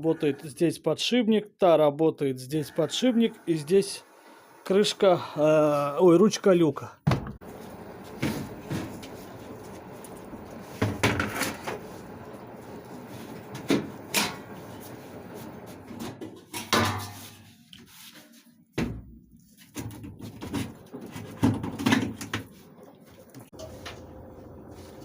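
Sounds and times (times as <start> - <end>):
steady background noise: 7.4 - 16.1.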